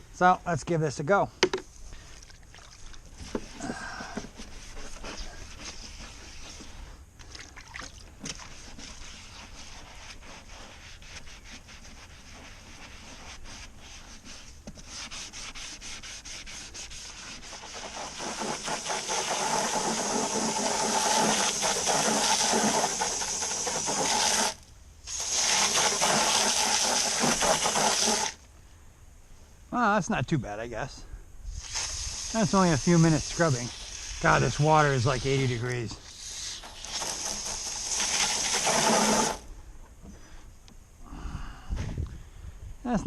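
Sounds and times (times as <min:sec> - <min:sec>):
scrubbing plastic liner: 0:02.3 - 0:28.4.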